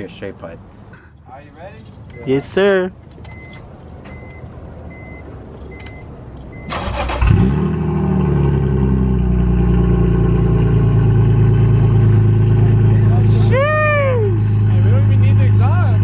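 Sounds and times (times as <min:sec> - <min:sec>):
engine starter cranking: 0:06.6 - 0:07.6
loud car engine idling: 0:06.9 - 0:16.0.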